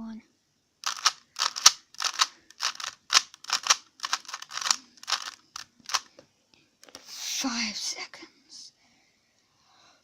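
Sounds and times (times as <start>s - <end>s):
puzzle cube clicking: 0.8s - 6.1s.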